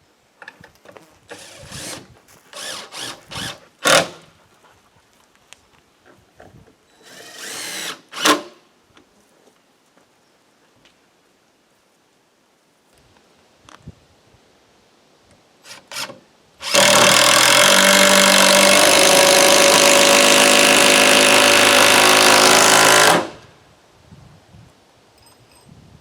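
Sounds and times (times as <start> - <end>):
power tool running: 2.6 - 4.2, 7.0 - 8.5, 15.7 - 23.4.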